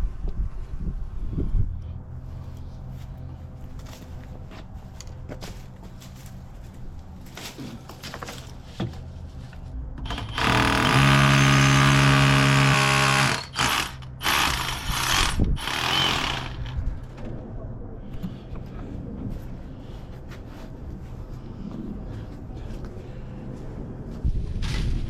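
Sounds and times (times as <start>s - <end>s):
power tool motor running: 10.0s - 16.8s.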